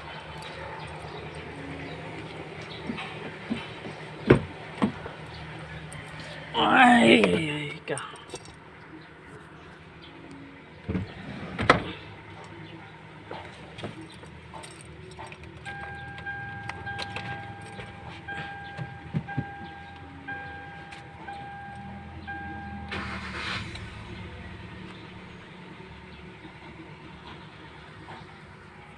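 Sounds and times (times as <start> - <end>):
keys jangling: 0.0 - 3.9, 8.0 - 8.6, 13.4 - 18.8
car warning chime pulses: 15.7 - 23.6.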